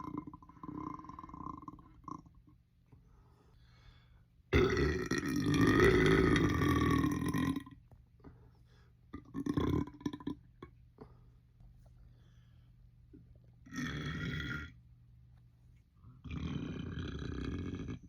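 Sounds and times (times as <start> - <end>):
long loud belch: 0.0 - 2.3, 4.5 - 7.8, 9.2 - 10.5, 13.7 - 14.8, 16.3 - 18.0.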